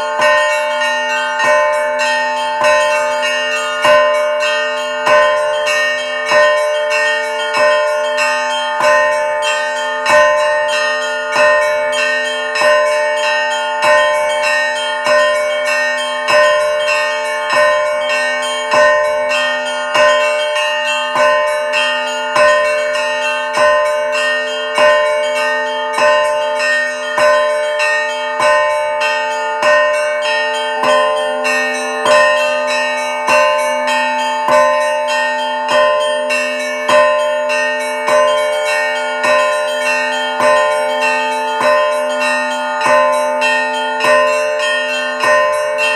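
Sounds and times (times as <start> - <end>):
church bells ringing: 0.0 - 45.9.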